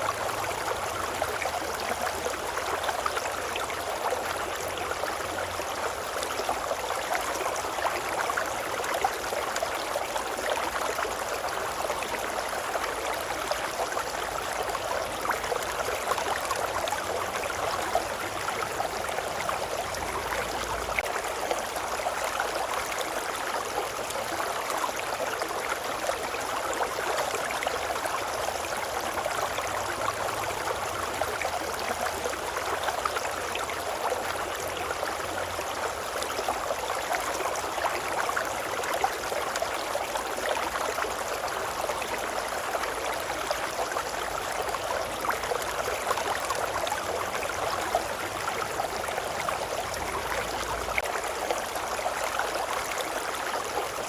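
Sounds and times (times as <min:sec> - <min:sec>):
babbling brook water rushing: 0:00.0 - 0:54.0.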